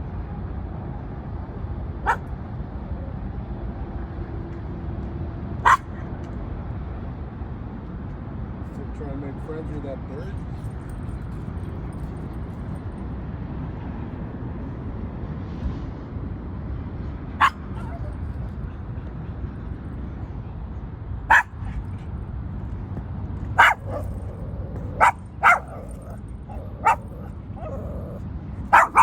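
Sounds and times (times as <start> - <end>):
dog barking: 2.0 - 2.3, 5.6 - 6.0, 17.4 - 18.2, 21.3 - 21.8, 23.6 - 29.0.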